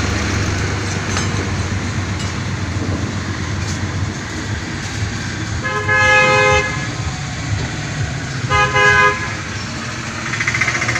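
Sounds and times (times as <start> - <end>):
low rumble of engines: 0.0 - 10.9
vehicle horn honking: 5.5 - 7.1, 8.4 - 9.6.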